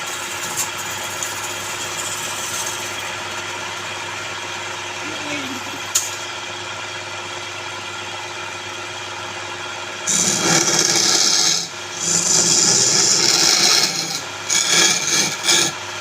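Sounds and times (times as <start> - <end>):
wood lathe humming: 10.0 - 16.0
lathe tool rasping into wood: 10.1 - 15.8.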